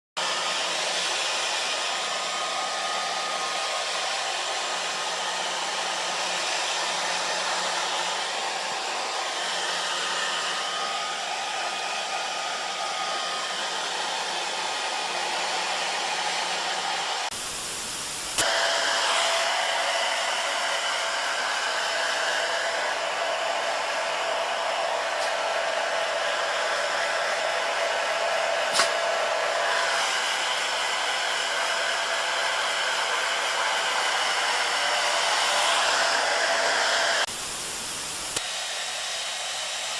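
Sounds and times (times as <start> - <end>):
hair dryer blowing: 0.2 - 39.9.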